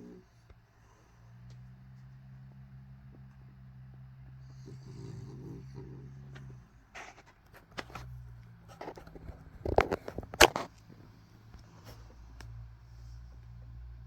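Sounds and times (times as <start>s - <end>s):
low steady snoring: 0.0s - 7.0s
sharp clicks and knocks: 8.7s - 10.8s.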